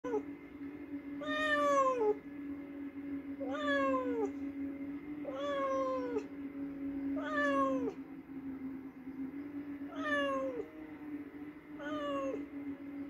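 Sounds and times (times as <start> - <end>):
cat meowing: 1.2 - 2.2, 3.4 - 4.3, 5.3 - 6.3, 7.2 - 8.0, 9.9 - 10.7, 11.8 - 12.4.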